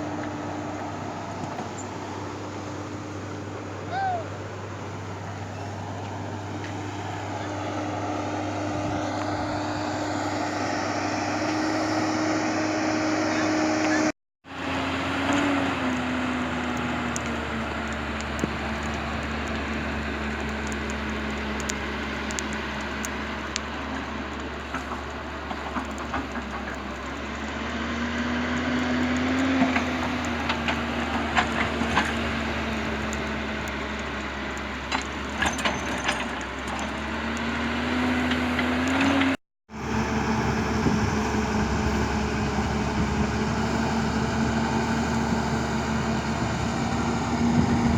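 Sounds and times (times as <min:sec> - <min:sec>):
excavator diesel engine running: 0:00.0 - 0:47.9
sharp cracks and snaps: 0:15.3 - 0:37.5.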